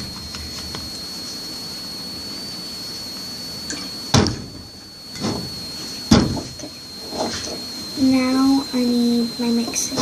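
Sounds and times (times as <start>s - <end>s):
high thin whine: 0.0s - 10.0s.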